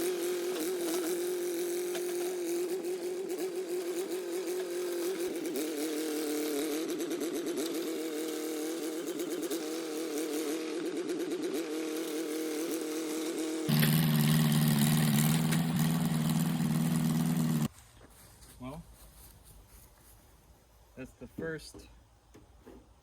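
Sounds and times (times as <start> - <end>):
bulldozer engine running: 0.0 - 17.7.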